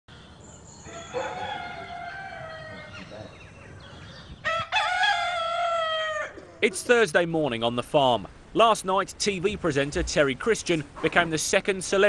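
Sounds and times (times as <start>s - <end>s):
rooster crowing: 0.9s - 3.2s, 3.8s - 6.6s.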